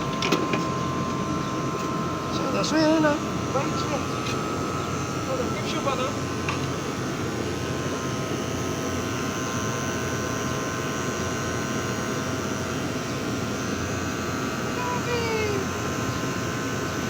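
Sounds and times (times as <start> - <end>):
air conditioner whirring: 0.0 - 17.0.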